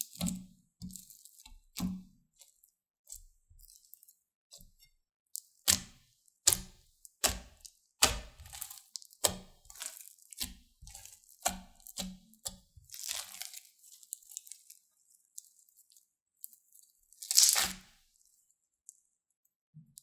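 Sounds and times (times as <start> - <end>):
slime squeezed popping: 17.2 - 17.8.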